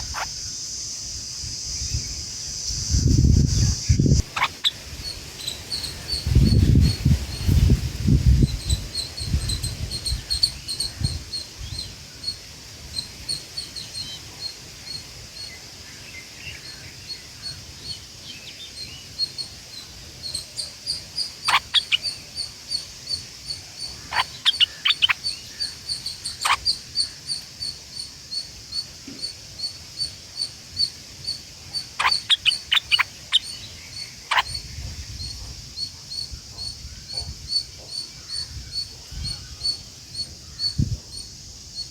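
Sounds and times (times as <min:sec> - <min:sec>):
high repeating chirping: 0:04.2 - 0:04.8, 0:20.3 - 0:35.4.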